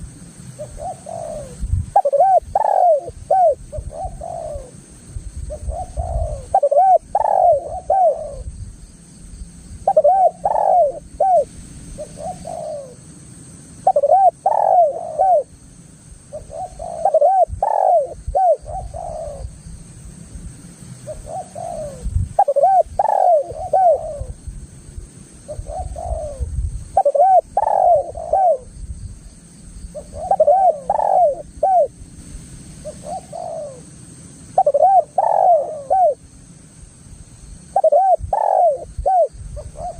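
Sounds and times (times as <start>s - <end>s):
dove cooing: 0.6s - 4.8s, 5.5s - 8.5s, 9.8s - 13.0s, 13.8s - 15.5s, 16.3s - 19.6s, 21.0s - 24.4s, 25.5s - 28.8s, 29.9s - 32.0s, 32.8s - 33.9s, 34.6s - 36.2s, 37.8s - 39.9s.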